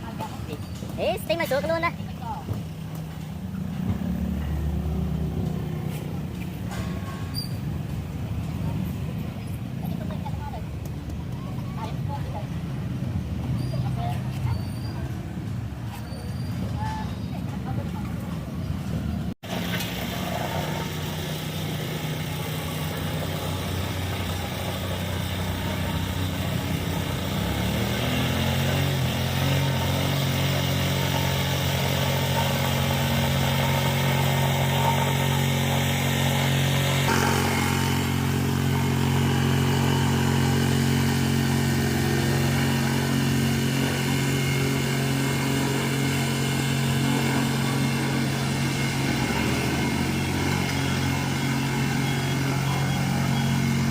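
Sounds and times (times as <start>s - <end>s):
engine running: 0.0s - 53.9s.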